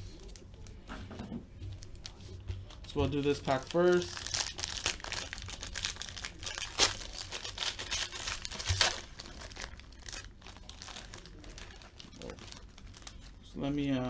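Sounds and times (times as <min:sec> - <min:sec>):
wrapper tearing and crinkling: 0:03.4 - 0:13.4.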